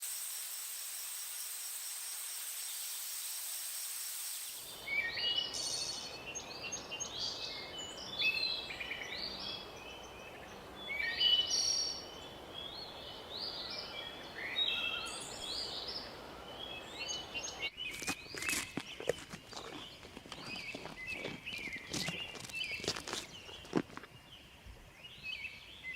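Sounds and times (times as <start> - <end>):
steady outdoor hiss: 0.0 - 25.9
birds chirping and calling: 16.6 - 23.8.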